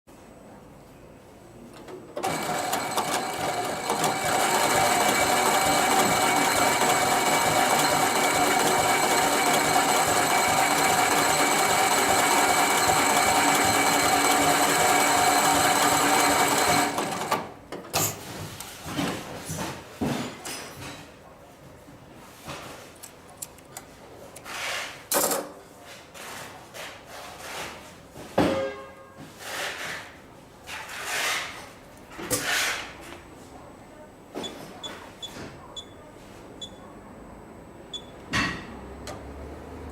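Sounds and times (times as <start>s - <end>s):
sewing machine running: 2.2s - 17.6s.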